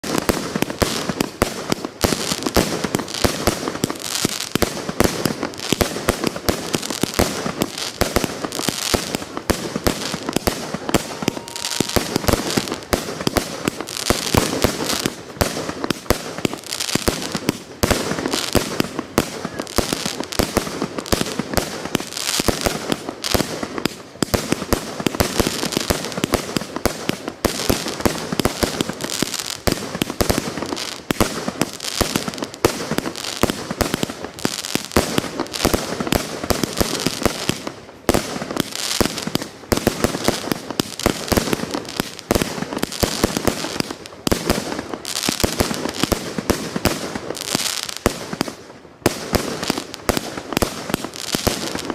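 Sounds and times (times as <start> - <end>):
fireworks bangs and crackles: 0.0 - 51.9.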